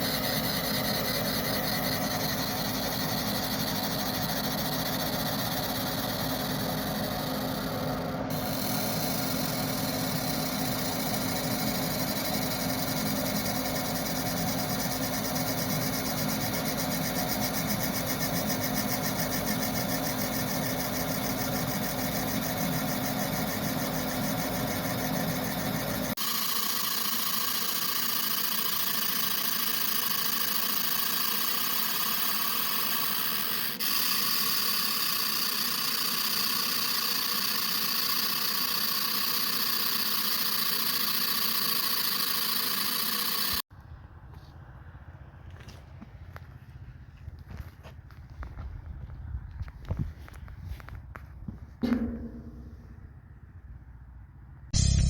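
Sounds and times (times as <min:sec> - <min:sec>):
machine hiss: 0:00.0 - 0:43.6
machine low hum: 0:00.0 - 0:45.6, 0:48.7 - 0:55.0.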